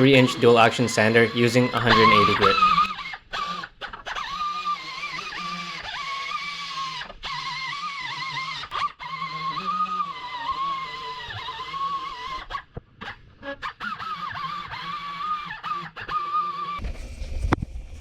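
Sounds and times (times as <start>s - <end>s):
sander whining on metal: 0.0s - 16.9s.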